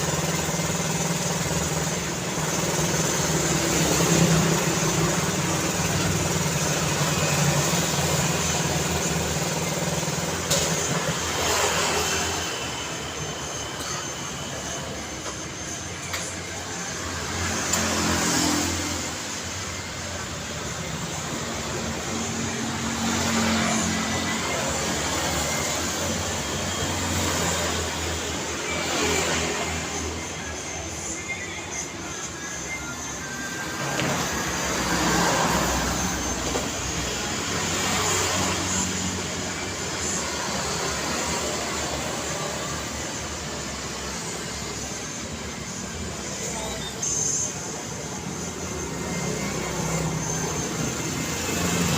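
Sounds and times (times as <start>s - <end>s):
vehicle engine running: 0.0s - 13.8s.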